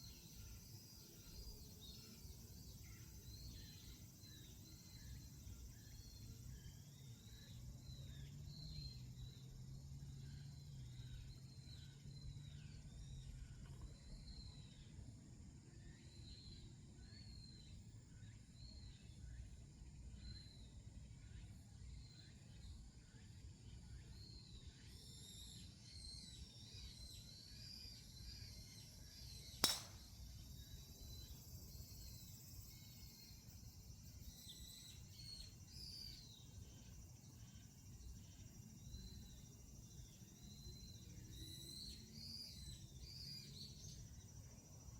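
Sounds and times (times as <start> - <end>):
sharp crack: 29.6 - 30.1.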